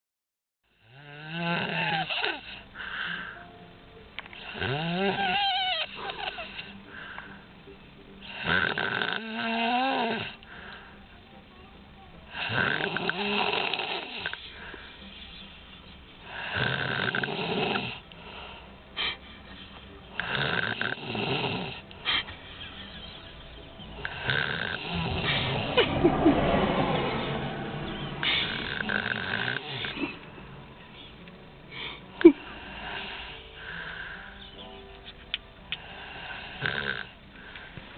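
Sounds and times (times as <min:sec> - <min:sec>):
woman snoring: 0:00.8 - 0:03.4, 0:04.4 - 0:06.8, 0:08.2 - 0:10.8, 0:12.3 - 0:14.7, 0:16.3 - 0:18.0, 0:20.2 - 0:22.2, 0:23.9 - 0:25.3, 0:28.3 - 0:30.2, 0:36.0 - 0:37.2.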